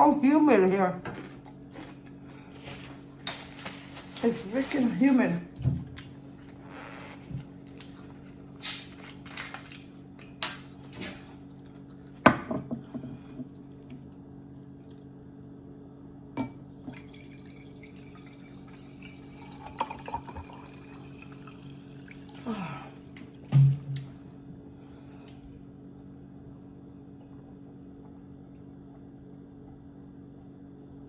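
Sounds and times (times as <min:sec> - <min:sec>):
steady low hum: 0:09.8 - 0:31.0.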